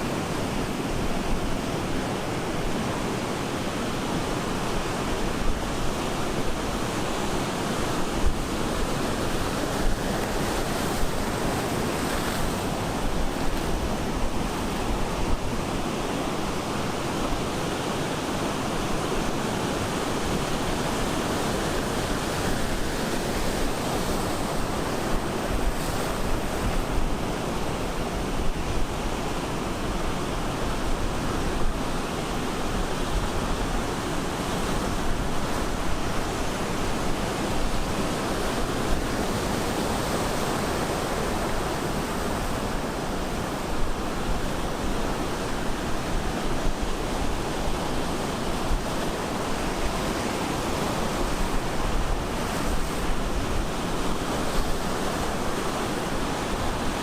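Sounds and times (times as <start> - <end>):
ocean surf breaking: 0.0 - 57.0
wind on microphone: 0.0 - 57.0.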